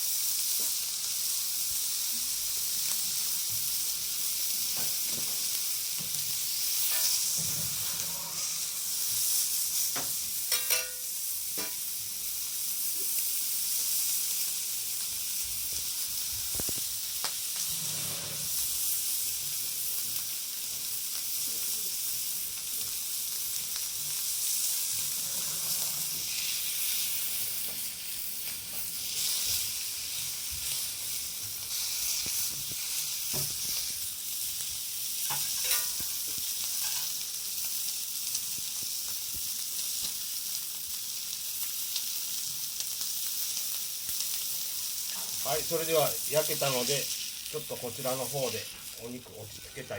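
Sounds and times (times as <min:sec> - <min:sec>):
steak sizzling on griddle: 0:00.0 - 0:49.9.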